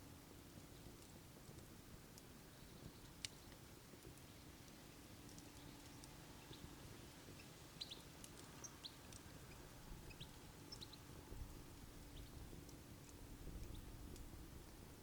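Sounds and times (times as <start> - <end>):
fire crackles: 0.0 - 15.0.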